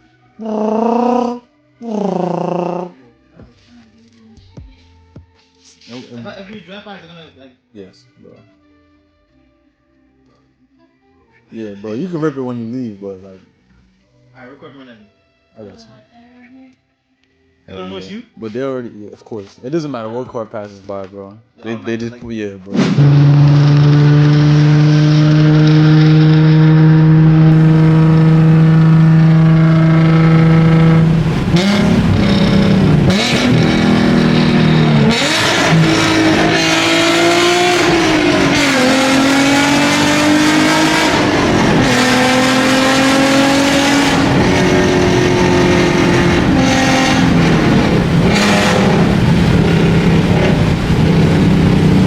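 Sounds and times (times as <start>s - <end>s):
loud car engine revving: 22.8s - 52.0s.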